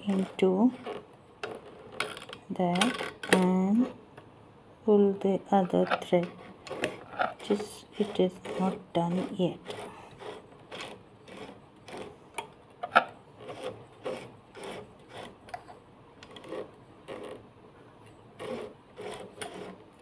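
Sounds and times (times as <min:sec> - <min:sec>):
sewing machine rubbing clicking strokes: 0:06.2 - 0:12.2, 0:18.4 - 0:19.8.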